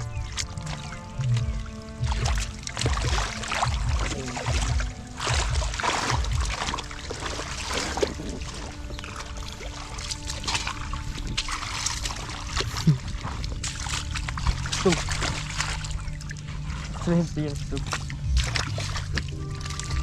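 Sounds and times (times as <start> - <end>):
splashing in shallow muddy water: 0.0 - 20.0.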